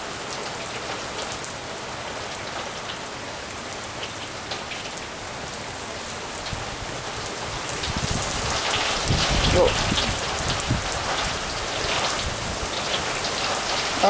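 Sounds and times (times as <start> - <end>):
rain hiss: 0.0 - 14.0
sharp raindrop hits: 7.7 - 14.0.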